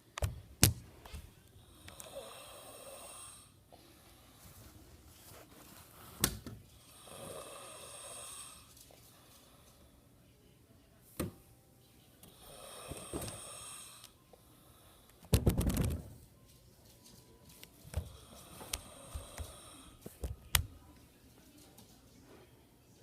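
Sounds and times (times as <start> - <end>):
man snoring: 1.7 - 3.6, 6.8 - 8.7, 12.3 - 14.1, 18.2 - 20.0.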